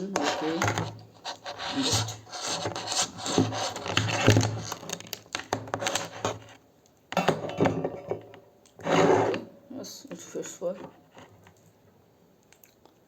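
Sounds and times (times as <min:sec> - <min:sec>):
rubbing and scraping of metal part: 0:00.0 - 0:04.9, 0:08.8 - 0:09.5.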